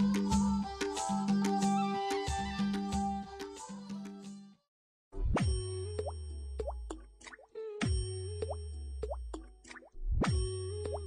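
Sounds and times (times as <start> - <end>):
playful music track: 0.0 - 4.4, 5.2 - 11.0.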